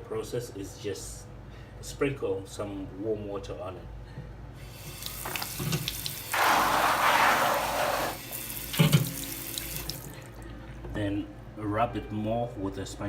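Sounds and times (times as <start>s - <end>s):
water running and splashing: 4.8s - 10.2s.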